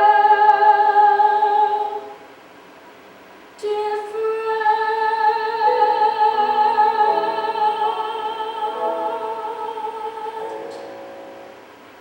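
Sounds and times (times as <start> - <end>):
person singing long note: 5.4 - 11.6
accompanying chords: 5.6 - 11.8.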